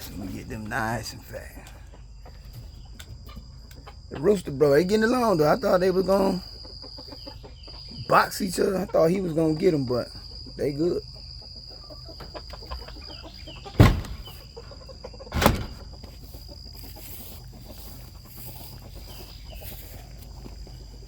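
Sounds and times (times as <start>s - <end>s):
chickens clucking: 0.0s - 21.0s
loud thumps: 13.8s - 14.5s, 15.3s - 16.0s.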